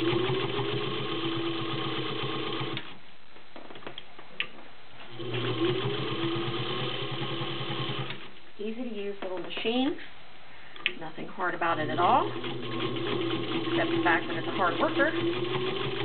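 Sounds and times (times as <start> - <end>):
sewing machine stitching: 0.0 - 2.9, 5.1 - 8.3, 11.6 - 16.0
click: 10.8 - 11.0.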